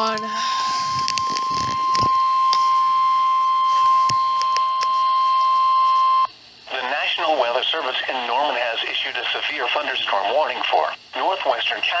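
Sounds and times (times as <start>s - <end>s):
loud steady alarm beep: 0.0s - 6.4s.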